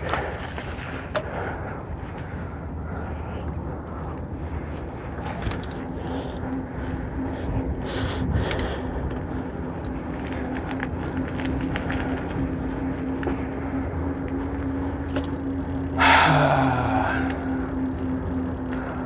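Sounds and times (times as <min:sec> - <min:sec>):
wind rush on microphone: 0:00.0 - 0:14.3
bike rattles and clicks: 0:00.0 - 0:19.0.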